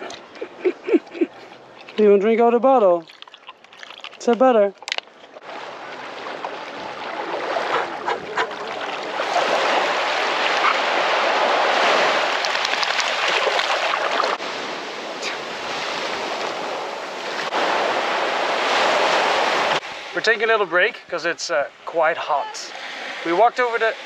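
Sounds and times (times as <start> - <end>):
surf washing onto beach: 5.5 - 20.5.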